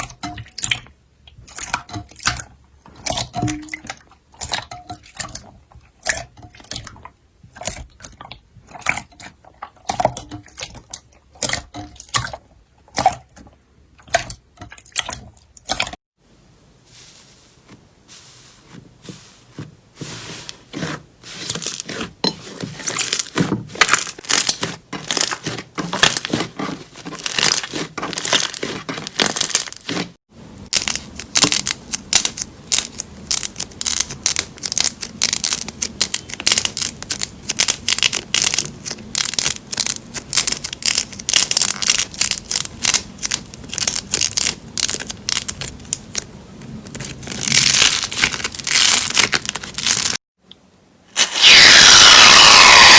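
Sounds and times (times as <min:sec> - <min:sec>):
crunchy slime crackling and popping: 0:22.9 - 0:50.2, 0:51.2 - 0:52.9.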